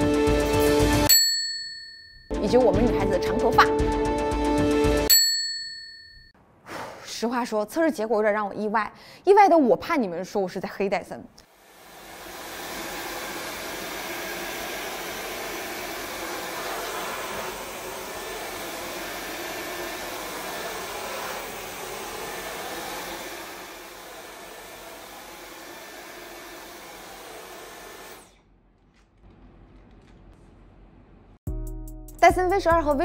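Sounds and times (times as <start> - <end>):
vacuum cleaner running: 11.6 - 28.4.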